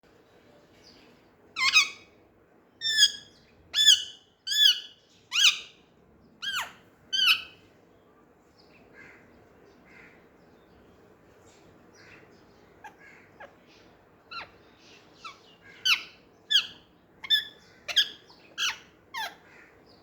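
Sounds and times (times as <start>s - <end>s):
parrot calling: 1.6s - 2.1s, 2.8s - 5.7s, 6.4s - 7.6s, 12.2s - 13.7s, 14.3s - 19.8s.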